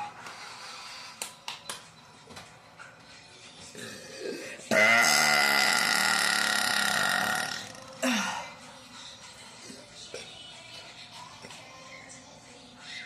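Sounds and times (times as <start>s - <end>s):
woman burping: 3.8s - 8.4s.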